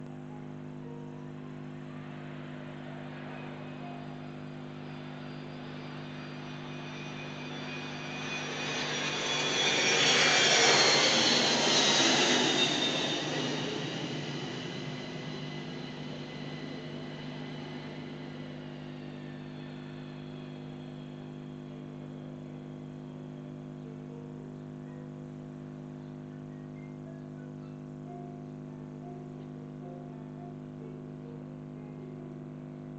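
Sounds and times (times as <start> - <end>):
jet flying over: 1.9 - 24.0.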